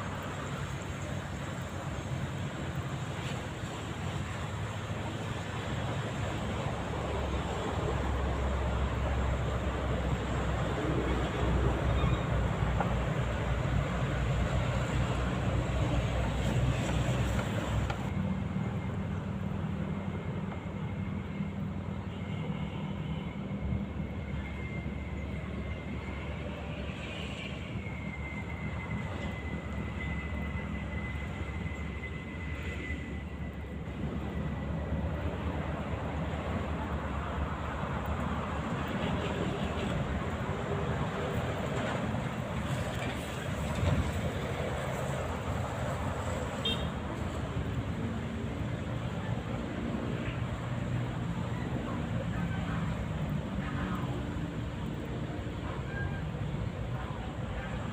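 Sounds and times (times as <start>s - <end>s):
road traffic rumbling: 0.0s - 57.9s
high whistle-like tone: 27.3s - 33.7s.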